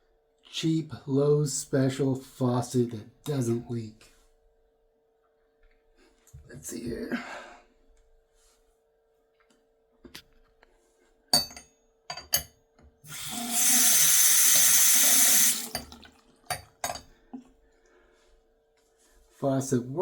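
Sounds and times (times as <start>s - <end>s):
water running from tap: 13.1s - 16.8s.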